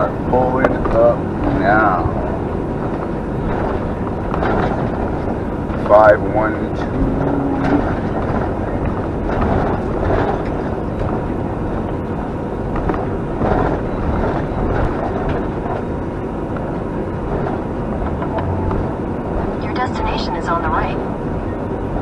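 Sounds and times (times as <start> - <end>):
engine and road noise in cabin: 0.0 - 22.0
brief tone: 18.2 - 19.0.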